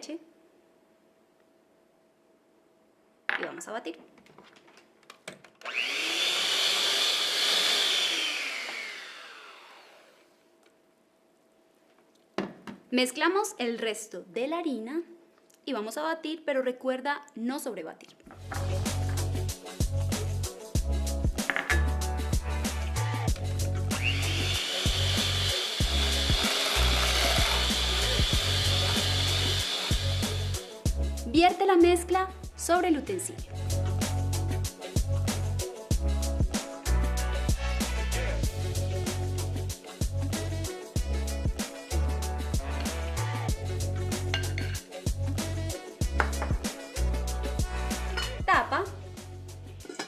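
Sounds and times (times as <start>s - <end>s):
electric mixer motor whine: 5.6s - 10.3s, 24.0s - 30.6s
background music with beat: 18.4s - 31.5s, 33.4s - 49.8s.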